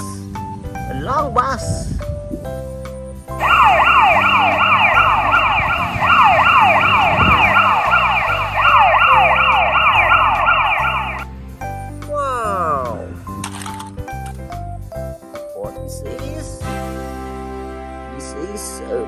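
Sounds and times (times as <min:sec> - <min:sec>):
background music: 0:00.0 - 0:19.0
electronic siren wailing: 0:03.4 - 0:11.3.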